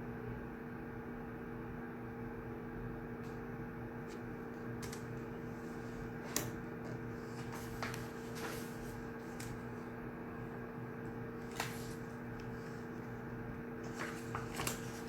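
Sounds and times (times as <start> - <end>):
ventilation hum: 0.0 - 15.0
small clicks and taps: 4.8 - 5.2.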